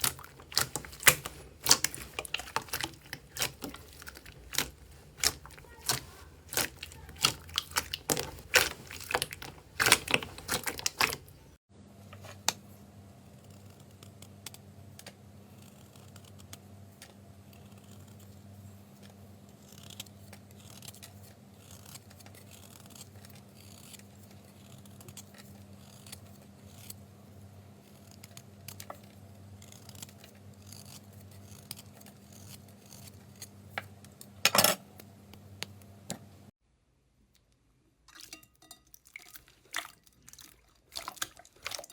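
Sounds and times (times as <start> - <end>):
slime sticky clicks and crackles: 0.0 - 11.4.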